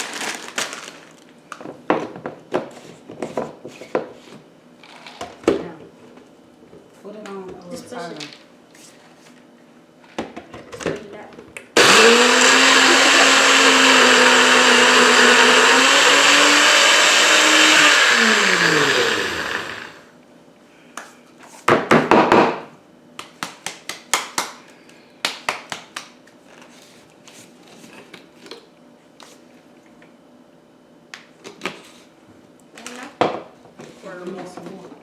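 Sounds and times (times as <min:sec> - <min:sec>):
blender motor running: 0:11.8 - 0:20.1.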